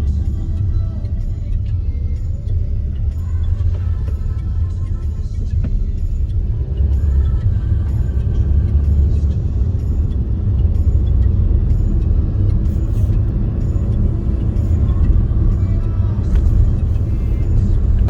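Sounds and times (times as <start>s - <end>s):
car engine and road noise: 0.0s - 18.0s.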